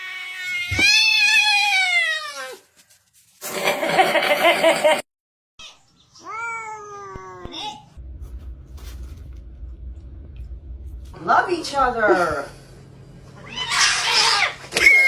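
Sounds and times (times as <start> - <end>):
cat meowing: 6.2 - 7.9, 13.4 - 15.0.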